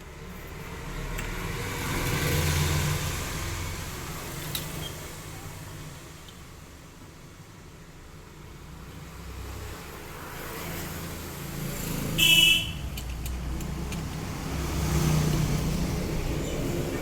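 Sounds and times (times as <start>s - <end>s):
motor vehicle passing: 9.1s - 17.0s.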